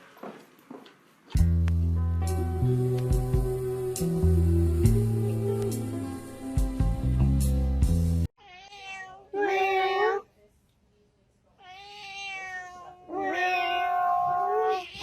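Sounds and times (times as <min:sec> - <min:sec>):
cat meowing: 0:08.4 - 0:10.3, 0:11.6 - 0:15.0.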